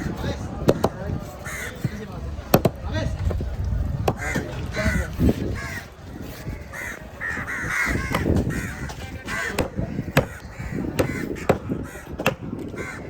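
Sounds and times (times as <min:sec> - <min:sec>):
crows cawing: 0:00.8 - 0:01.9, 0:04.1 - 0:05.9, 0:06.7 - 0:13.0
knife chopping on board: 0:02.5 - 0:02.8.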